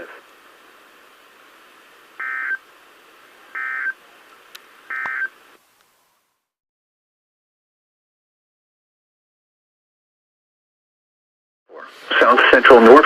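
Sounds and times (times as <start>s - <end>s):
warbling two-tone data bursts: 2.2s - 2.6s, 3.6s - 4.0s, 4.9s - 5.3s.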